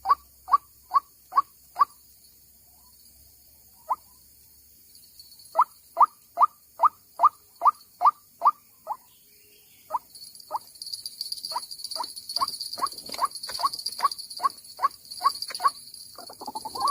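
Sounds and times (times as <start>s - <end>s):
bird calling kook notes: 11.5s - 16.9s.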